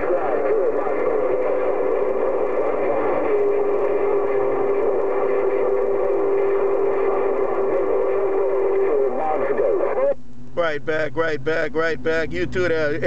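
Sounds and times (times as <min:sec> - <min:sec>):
steady radio whistle: 0:00.0 - 0:10.2
radio hiss and static: 0:00.0 - 0:13.0.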